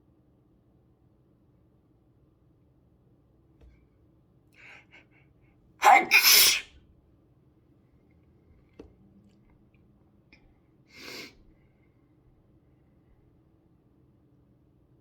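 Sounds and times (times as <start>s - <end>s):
short breath: 4.6s - 6.6s, 10.9s - 11.4s
person sneezing: 5.8s - 6.7s.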